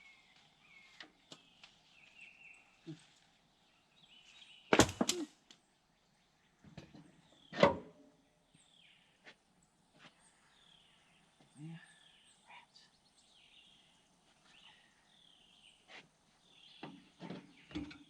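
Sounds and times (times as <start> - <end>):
faint bird chirps: 0.0 - 5.4, 10.0 - 18.0.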